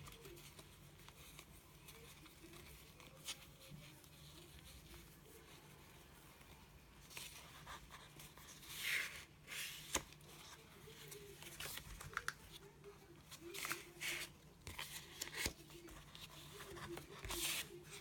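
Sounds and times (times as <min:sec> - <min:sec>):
paper pages rustling: 0:06.2 - 0:18.0.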